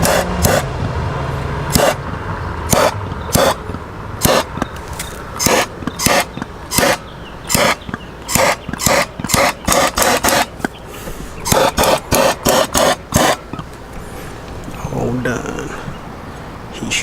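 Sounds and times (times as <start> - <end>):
hands scraping and rubbing wiring: 2.7 - 14.8.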